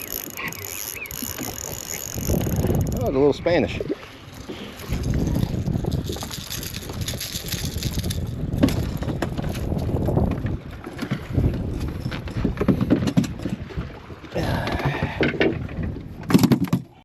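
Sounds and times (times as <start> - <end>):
knocks and clicks: 0.0 - 3.1
wind buffeting microphone: 0.0 - 16.3.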